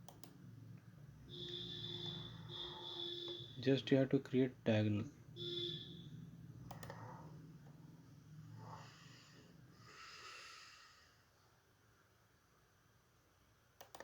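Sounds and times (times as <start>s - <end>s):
click: 0.0s - 0.4s, 6.7s - 7.0s, 13.8s - 14.0s
faint breathing: 6.8s - 7.6s, 8.3s - 11.4s.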